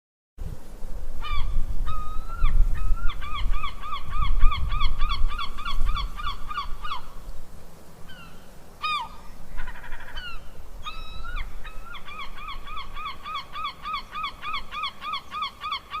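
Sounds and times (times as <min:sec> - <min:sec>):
cranes calling: 0:01.2 - 0:07.2, 0:08.1 - 0:16.0.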